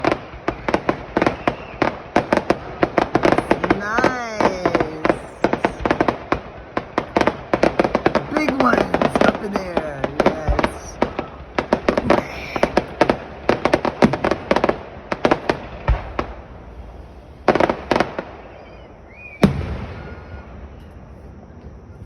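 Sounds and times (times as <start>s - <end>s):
fireworks crackling: 0.0s - 20.4s
loud firework bang: 12.9s - 20.8s.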